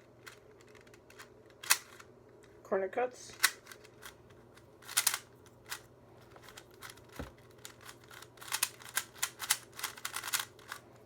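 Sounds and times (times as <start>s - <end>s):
puzzle cube clicking: 0.2s - 2.0s, 4.8s - 5.8s, 6.4s - 10.8s.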